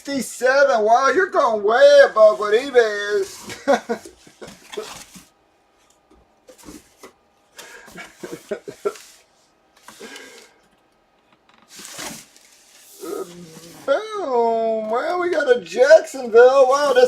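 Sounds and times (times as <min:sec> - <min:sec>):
packaging rustling: 0:11.7 - 0:13.9.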